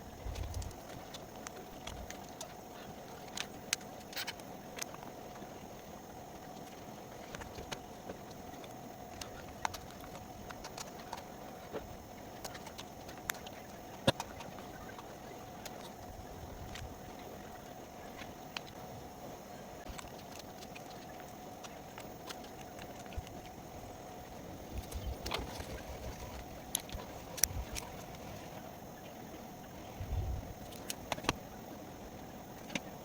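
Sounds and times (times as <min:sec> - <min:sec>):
faint steady hum: 0:00.0 - 0:33.0
small parts and tools clicking: 0:00.2 - 0:05.5.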